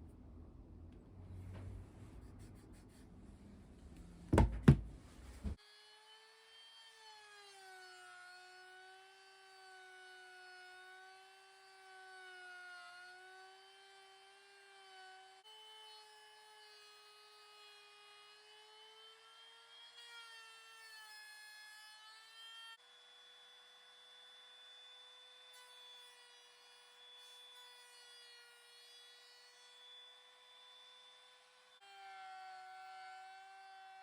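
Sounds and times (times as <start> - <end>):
sharp knocks: 4.3 - 5.6.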